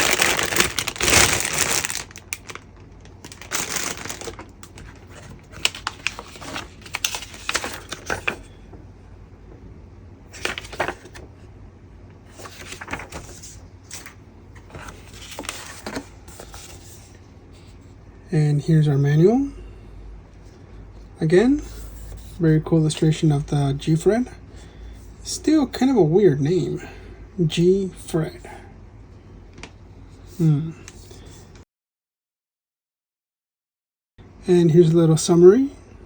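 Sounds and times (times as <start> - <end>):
plastic bags crinkling: 0.0 - 8.5, 12.4 - 14.2.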